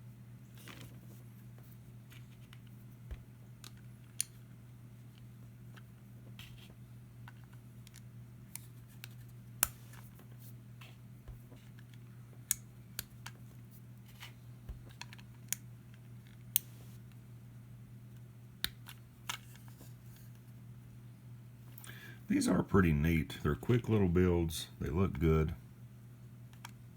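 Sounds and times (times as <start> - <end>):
steady low hum: 17.2 - 26.9.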